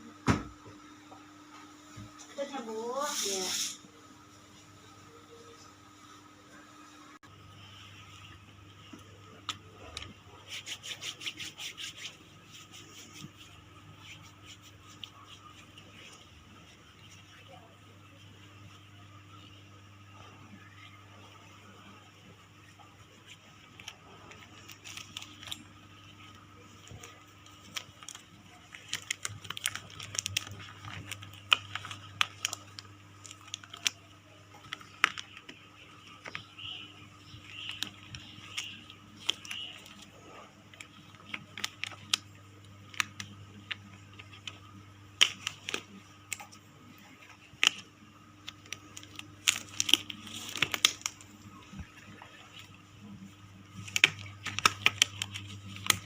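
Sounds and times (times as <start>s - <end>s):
faint low hum: 0.0s - 56.0s
crinkling of packaging: 22.8s - 56.0s.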